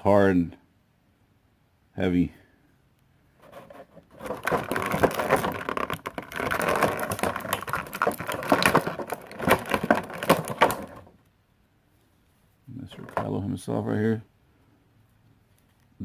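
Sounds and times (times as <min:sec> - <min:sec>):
plastic packaging crinkling: 0:03.4 - 0:11.2.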